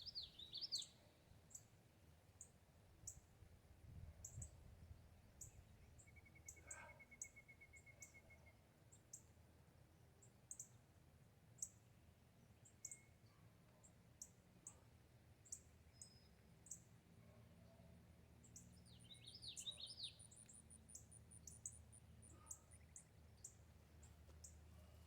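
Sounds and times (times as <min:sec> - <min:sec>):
bird chirps: 0:12.7 - 0:13.2, 0:18.5 - 0:25.0
bird trill: 0:19.0 - 0:23.1.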